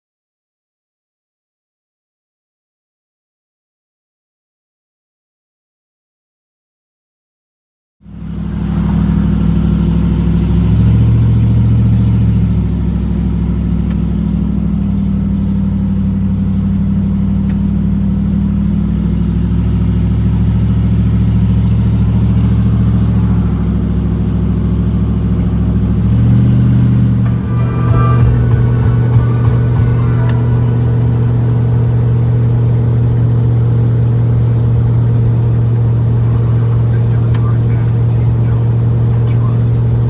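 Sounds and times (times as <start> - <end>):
pickup truck engine running: 8.1 - 40.0.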